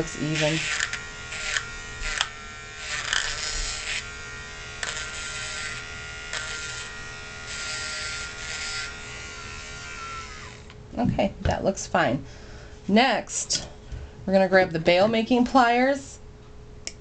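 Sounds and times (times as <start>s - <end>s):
rotary tool whining: 0.3s - 10.8s.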